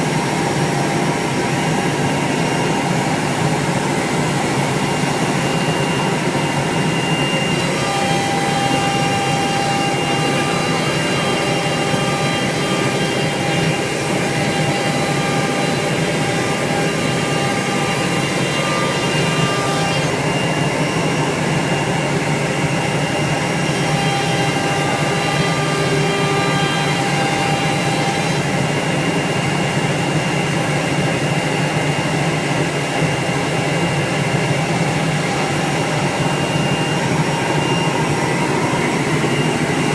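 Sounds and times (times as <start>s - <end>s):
router spindle cutting wood: 0.1s - 39.9s.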